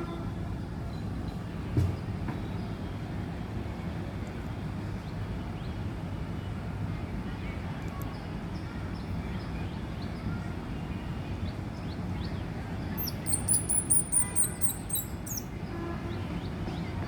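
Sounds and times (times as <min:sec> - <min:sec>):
baby squirrel high-pitched squeaks: 0:13.0 - 0:15.5.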